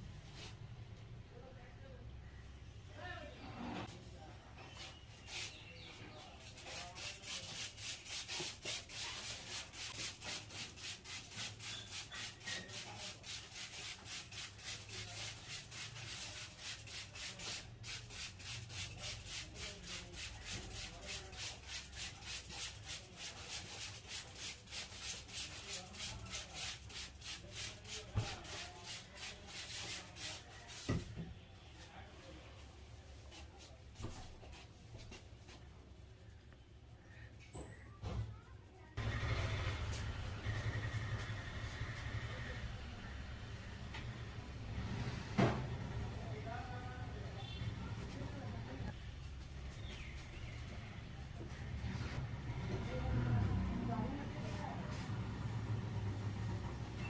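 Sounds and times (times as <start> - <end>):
hands rubbing hair and scalp: 6.4 - 30.9, 33.0 - 36.9.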